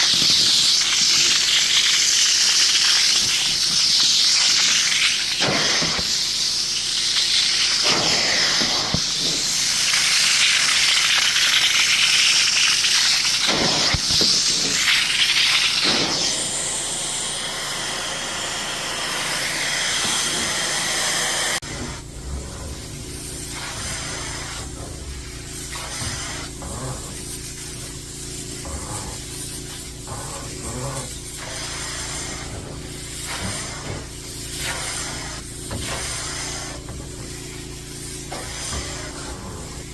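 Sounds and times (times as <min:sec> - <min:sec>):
cleaning machine spraying hiss: 0:00.0 - 0:39.9.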